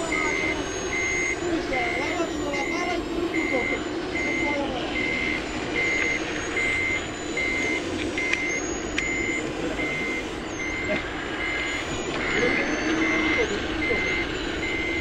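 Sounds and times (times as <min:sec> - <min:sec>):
reversing alarm beeping: 0:00.0 - 0:15.0.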